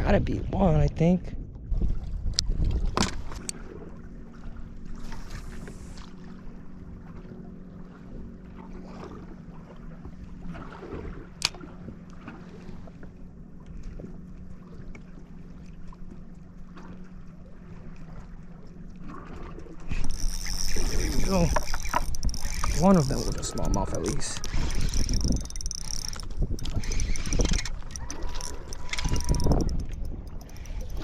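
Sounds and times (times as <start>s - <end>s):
wind noise: 0.0s - 3.5s, 19.9s - 31.0s
boat motor hum: 0.0s - 31.0s
water noise: 0.0s - 31.0s.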